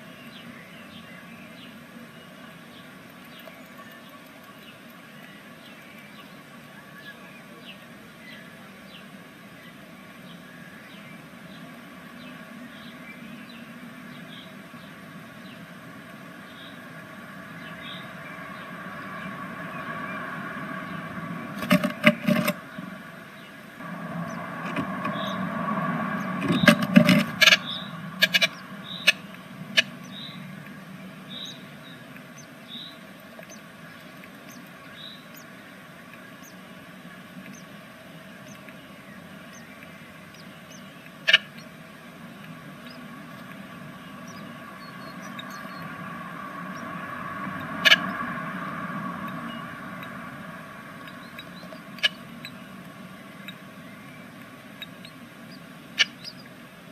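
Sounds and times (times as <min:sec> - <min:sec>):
steady hum: 0:00.0 - 0:56.9
low rumble: 0:15.6 - 0:35.3, 0:41.9 - 0:54.8
birds knocking and scratching: 0:21.6 - 0:22.6, 0:26.4 - 0:28.6
high bird peeps: 0:26.2 - 0:30.4, 0:39.5 - 0:41.8, 0:51.0 - 0:52.8, 0:53.4 - 0:56.6.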